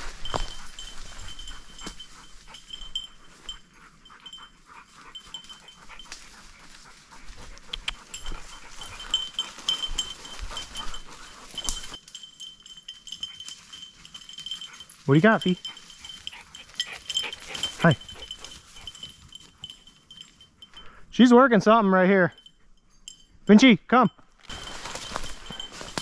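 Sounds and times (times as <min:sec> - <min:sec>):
faint rustling of brush: 0:00.0 - 0:20.9, 0:24.4 - 0:26.0
dog collar bell jingling: 0:00.0 - 0:26.0.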